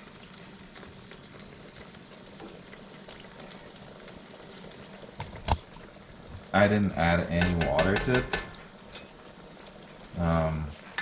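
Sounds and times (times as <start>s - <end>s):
pot simmering with bubbling: 0.0s - 11.0s.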